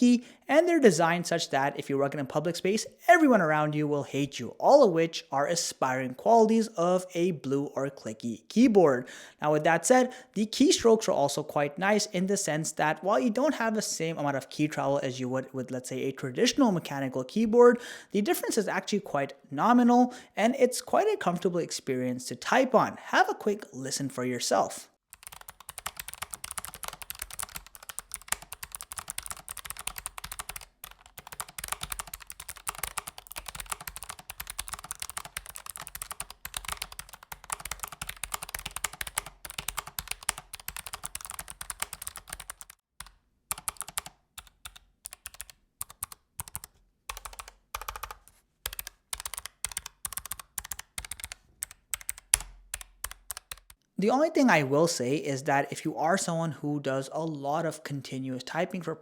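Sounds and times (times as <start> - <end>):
clicky mechanical keyboard typing: 25.2 - 53.8.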